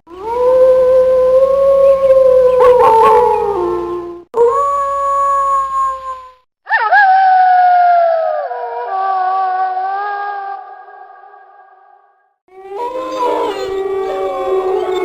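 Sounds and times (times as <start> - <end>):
wolves howling: 0.1 - 5.4, 12.5 - 15.0.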